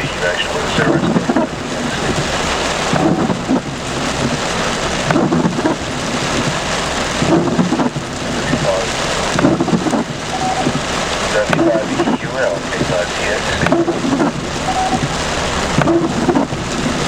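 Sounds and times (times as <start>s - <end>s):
heavy rain pouring: 0.0s - 17.0s
thunder rumbling: 0.0s - 17.0s.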